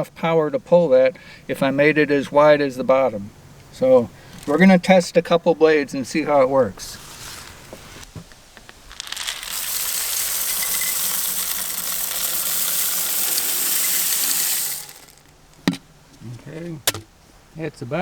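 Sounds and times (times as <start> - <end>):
grain grinder rattling grind: 4.4 - 4.7, 8.6 - 15.8.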